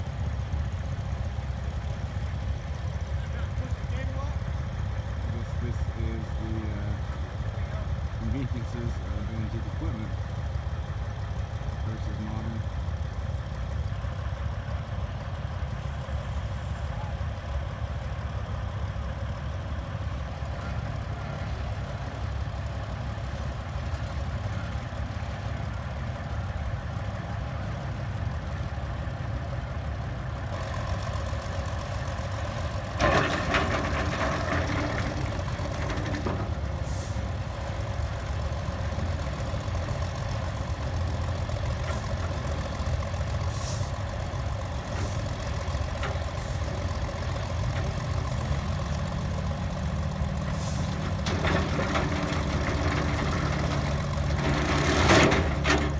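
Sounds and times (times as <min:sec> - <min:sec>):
power shovel engine running: 0:00.0 - 0:55.9
clattering knocks: 0:51.1 - 0:55.9.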